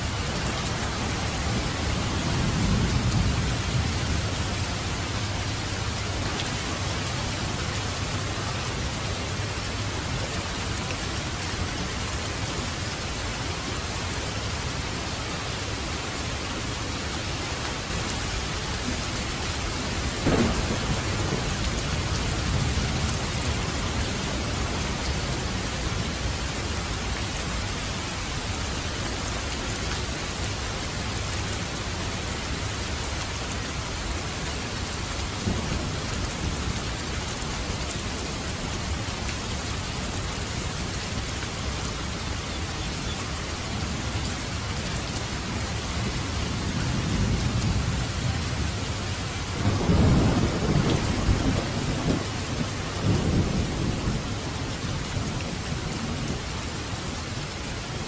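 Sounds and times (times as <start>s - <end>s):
steady rain: 0.0s - 58.0s
thunder rumbling: 0.4s - 8.1s, 19.6s - 26.2s, 49.5s - 56.3s.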